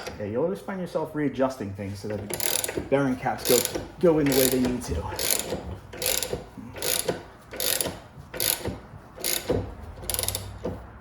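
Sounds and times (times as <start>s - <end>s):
ratchet clicking: 2.1s - 10.8s.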